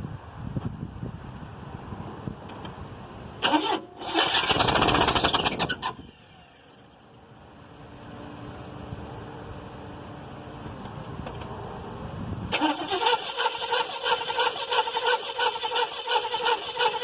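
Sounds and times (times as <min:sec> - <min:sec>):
low steady rumble: 0:00.0 - 0:12.6
car engine cranking: 0:03.4 - 0:06.3, 0:12.5 - 0:17.0.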